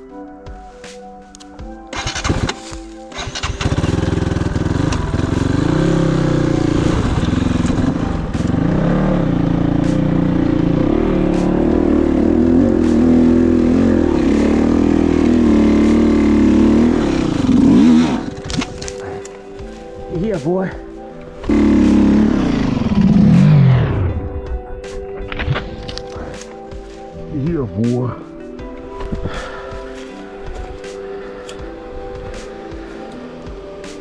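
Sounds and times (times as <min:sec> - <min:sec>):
motorcycle engine revving: 0:01.9 - 0:19.3, 0:21.4 - 0:26.5.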